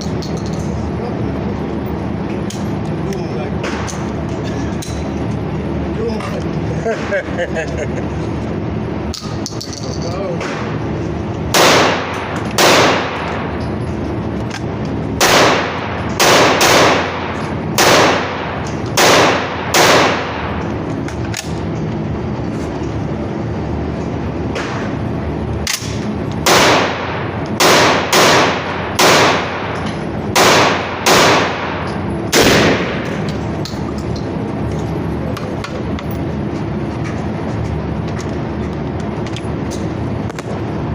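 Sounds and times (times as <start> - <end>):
steady background noise: 0.0 - 40.9
gunshots: 11.5 - 13.5, 15.2 - 20.6, 25.6 - 33.3.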